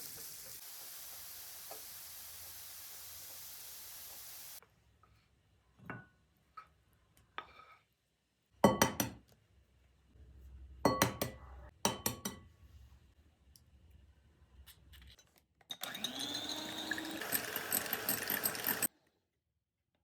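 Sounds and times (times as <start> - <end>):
food sizzling in oil: 0.0 - 4.6.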